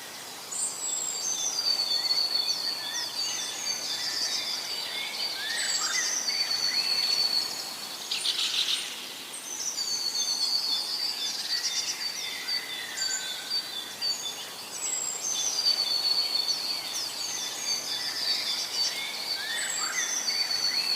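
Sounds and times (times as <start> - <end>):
birds chirping and singing: 0.7 - 9.0, 9.6 - 20.9.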